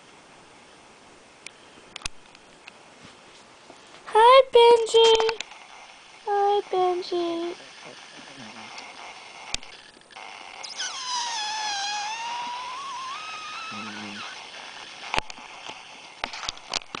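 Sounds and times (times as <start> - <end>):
sharp clicks: 5.0 - 5.6
dog whining: 8.4 - 15.9.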